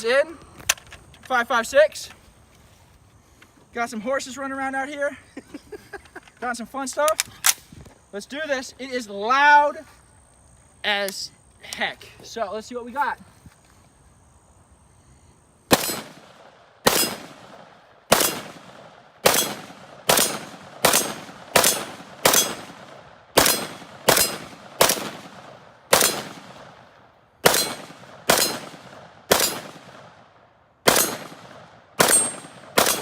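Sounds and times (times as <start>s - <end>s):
pistol shots with echo: 15.7s - 33.0s.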